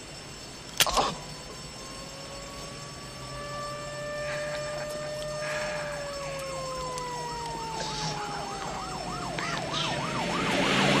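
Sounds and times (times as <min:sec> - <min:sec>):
rapid sweeping siren: 0:00.0 - 0:11.0
steady siren tone: 0:00.0 - 0:11.0.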